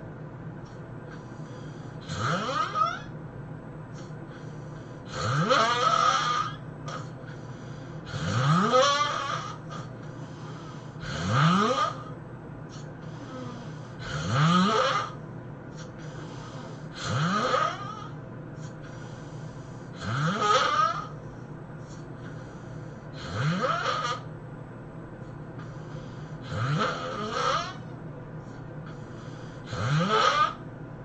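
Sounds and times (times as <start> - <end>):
man snoring loudly: 1.1 - 3.1, 5.0 - 7.1, 7.7 - 12.1, 12.7 - 15.2, 16.0 - 21.1, 22.2 - 24.3, 25.6 - 27.8, 28.8 - 30.6.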